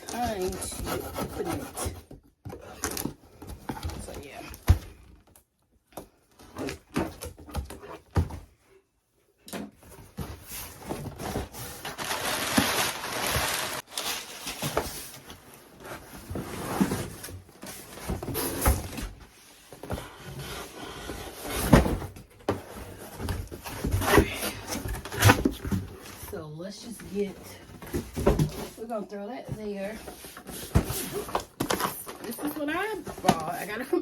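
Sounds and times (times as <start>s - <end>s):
packaging rustling and scraping: 9.8s - 26.4s, 29.5s - 34.0s.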